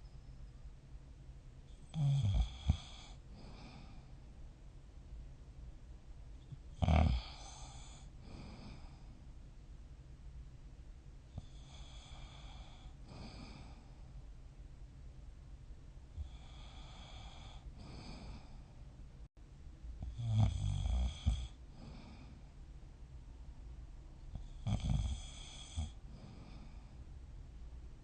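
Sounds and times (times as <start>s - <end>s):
person snoring: 1.9s - 4.0s, 6.8s - 9.0s, 24.4s - 26.8s
low steady rumble: 3.2s - 6.8s, 7.6s - 16.8s, 17.6s - 20.2s, 21.6s - 24.6s, 26.0s - 28.0s.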